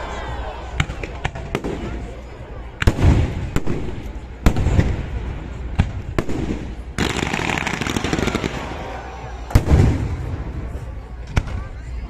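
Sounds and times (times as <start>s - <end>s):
fireworks bangs: 2.8s - 11.7s.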